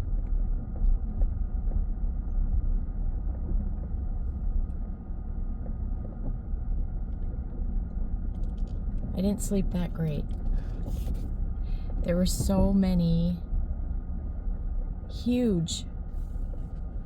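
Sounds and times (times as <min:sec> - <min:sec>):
minivan road and engine rumble: 0:00.0 - 0:17.0.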